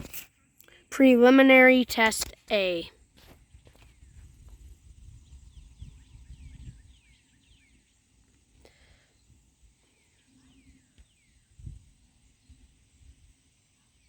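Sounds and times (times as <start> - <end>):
birds chirping: 0.7 - 4.2, 5.1 - 12.8.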